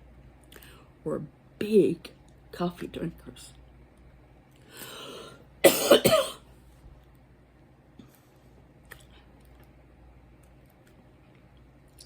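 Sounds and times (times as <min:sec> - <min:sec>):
person coughing: 0:05.6 - 0:06.4.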